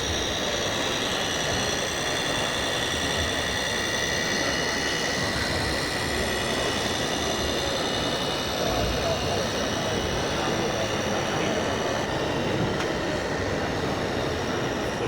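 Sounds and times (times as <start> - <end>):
high whine of model machines: 0.0 - 15.0
dense background din: 3.8 - 15.0.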